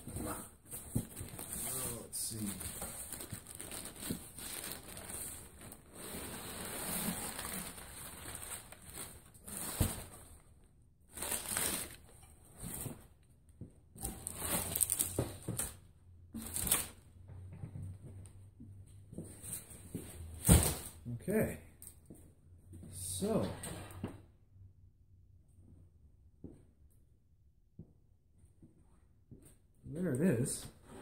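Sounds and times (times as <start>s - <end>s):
packing material and cardboard rustling: 0.0s - 10.4s, 11.1s - 13.1s, 14.0s - 15.8s, 16.4s - 17.0s.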